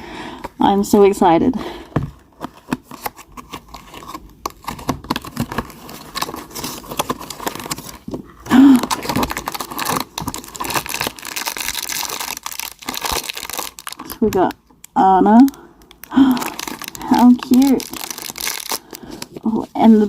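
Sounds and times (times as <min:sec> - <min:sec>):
packaging crinkling and tearing: 0:02.3 - 0:20.0.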